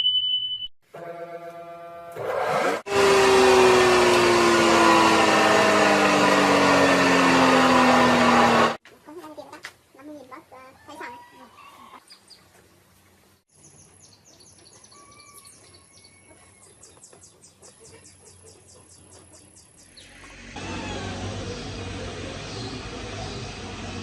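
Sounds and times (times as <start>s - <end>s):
motor humming: 1.6s - 8.8s, 20.0s - 24.0s.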